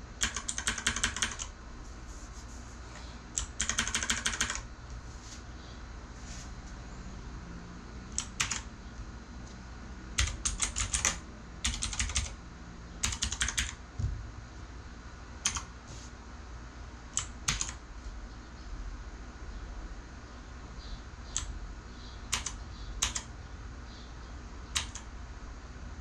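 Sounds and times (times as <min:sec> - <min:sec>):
clicky mechanical keyboard typing: 0:00.2 - 0:01.5, 0:03.4 - 0:04.6, 0:08.1 - 0:08.7, 0:10.2 - 0:12.4, 0:13.0 - 0:13.8, 0:15.4 - 0:15.7, 0:17.2 - 0:17.8, 0:22.3 - 0:23.3, 0:24.7 - 0:25.1.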